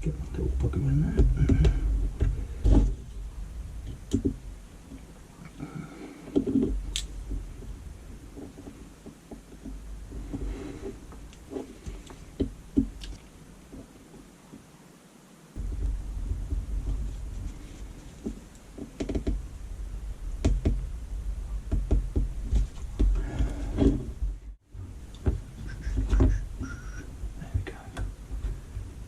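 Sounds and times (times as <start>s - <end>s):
light clicks and knocks: 0.0s - 3.1s, 3.8s - 14.6s, 15.6s - 19.5s, 20.4s - 20.9s, 21.6s - 24.2s, 27.4s - 29.0s
low rumble: 0.0s - 13.8s, 15.6s - 29.0s.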